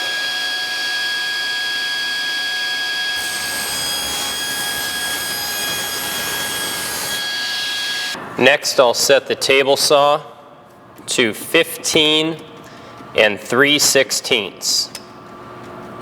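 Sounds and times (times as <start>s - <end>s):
table saw whining: 0.0s - 8.2s
saw blade cutting wood: 3.2s - 8.2s.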